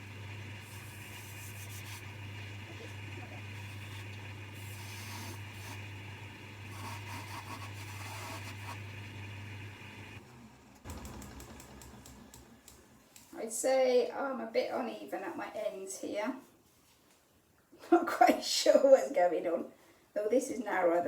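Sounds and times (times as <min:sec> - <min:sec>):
chisel cutting spinning wood: 0:00.0 - 0:10.2
lathe motor hum: 0:00.0 - 0:12.8.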